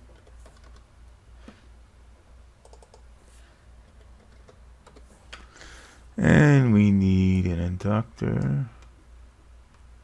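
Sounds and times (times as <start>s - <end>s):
keyboard and mouse clicking: 0.0s - 0.9s, 2.6s - 3.1s, 3.9s - 5.1s
low electrical hum: 0.0s - 10.0s.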